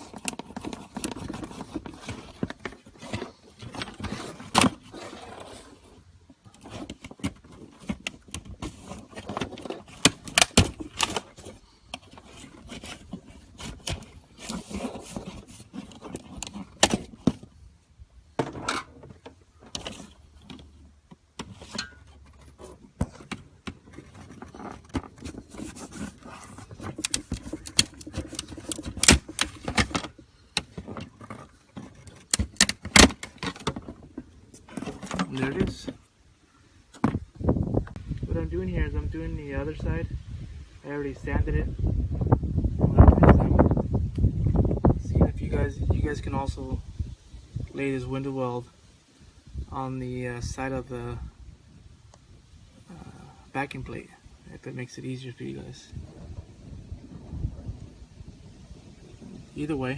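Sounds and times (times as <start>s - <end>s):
tools and parts handled: 0.0s - 17.5s, 18.4s - 36.1s.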